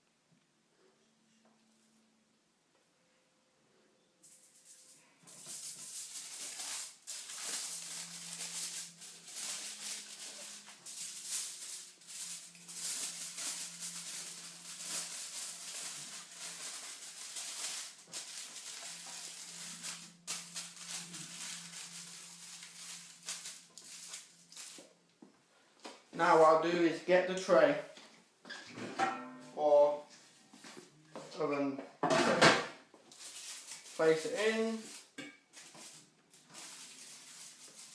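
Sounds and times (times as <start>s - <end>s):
aluminium foil crinkling: 4.2s - 25.0s, 33.0s - 37.9s.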